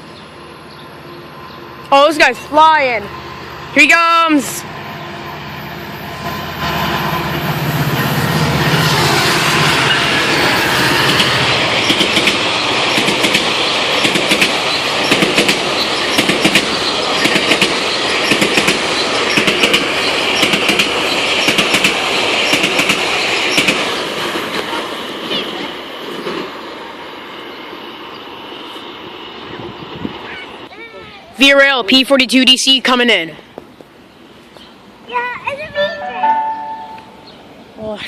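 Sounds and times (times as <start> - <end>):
rush of train wheel noise: 0.0 - 30.8
diesel locomotive engine: 0.0 - 32.2, 33.2 - 38.0
wheels clacking over rail joints: 7.8 - 26.6.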